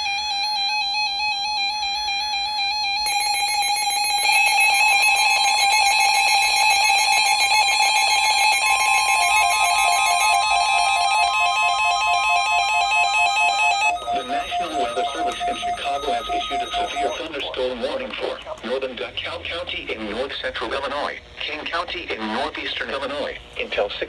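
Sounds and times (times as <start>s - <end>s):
warbling electronic alarm tones: 0.0s - 18.1s
steady alarm tone: 0.0s - 18.4s
quick alternating beeping: 3.1s - 18.0s.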